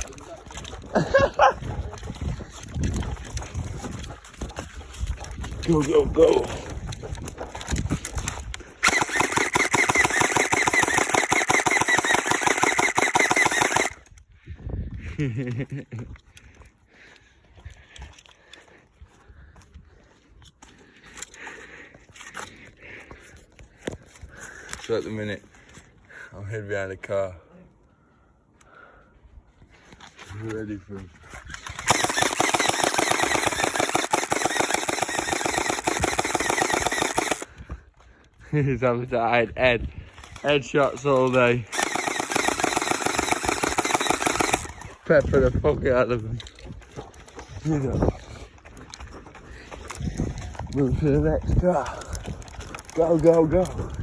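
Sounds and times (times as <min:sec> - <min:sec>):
gel blaster full-auto burst: 0:08.8 - 0:14.0, 0:31.6 - 0:37.5, 0:41.7 - 0:45.0.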